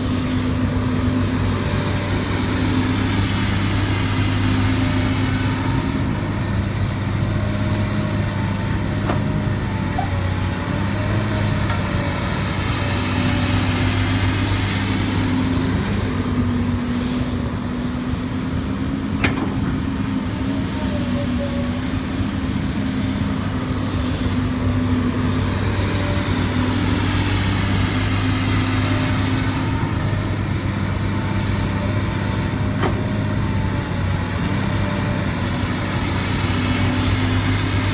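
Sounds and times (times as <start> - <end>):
heavy machinery diesel engines: 0.0 - 37.9.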